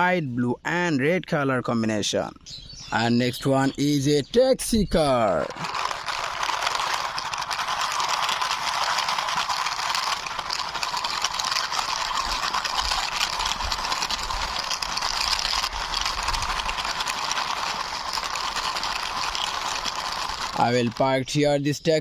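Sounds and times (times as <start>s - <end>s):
toy car wheels scraping a wall: 2.9s - 22.0s.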